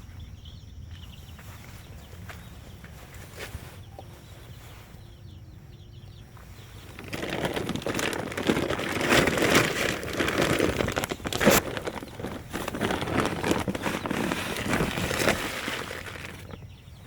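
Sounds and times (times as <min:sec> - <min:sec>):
faint bird chirps: 0:00.0 - 0:08.7, 0:10.8 - 0:17.0
rustling and crackling with snaps: 0:06.8 - 0:16.7.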